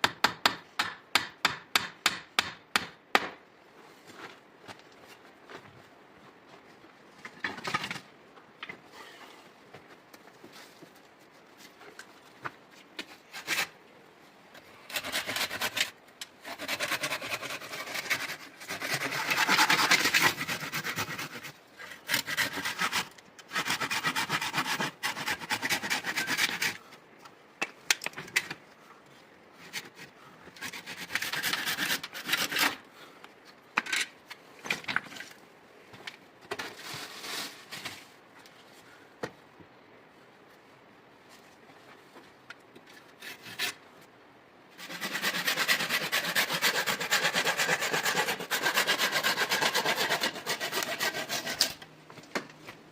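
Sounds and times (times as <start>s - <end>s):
hand tool rasping on wood: 14.9s - 26.8s, 44.8s - 51.8s.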